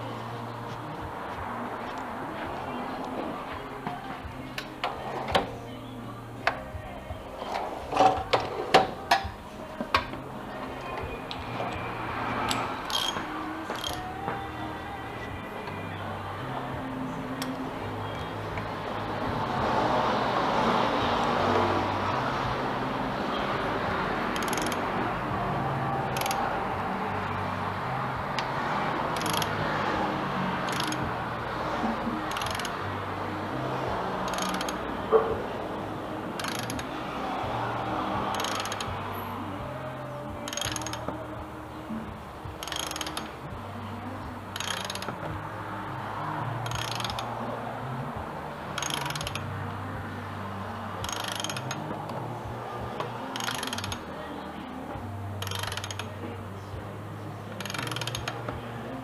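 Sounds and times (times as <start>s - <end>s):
soft background music: 0.0s - 59.0s
ratchet wrench clicking: 10.8s - 14.6s, 17.4s - 17.6s, 24.3s - 25.0s, 26.0s - 26.5s, 29.1s - 29.9s, 30.6s - 31.1s, 32.2s - 32.8s, 34.2s - 35.4s, 36.4s - 39.2s, 40.4s - 41.2s, 41.9s - 43.4s, 44.6s - 45.4s, 46.6s - 47.4s, 48.7s - 49.7s, 51.0s - 54.1s, 55.4s - 56.2s, 57.5s - 58.6s.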